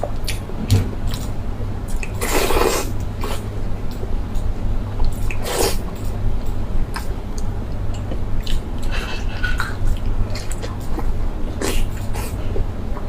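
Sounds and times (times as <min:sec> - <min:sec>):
steady low hum: 0:00.0 - 0:13.0
person chewing food: 0:06.9 - 0:12.7.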